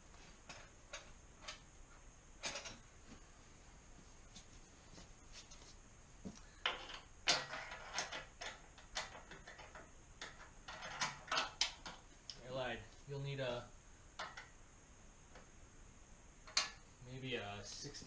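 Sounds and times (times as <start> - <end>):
metal tools clicking and knocking: 6.6 - 12.0.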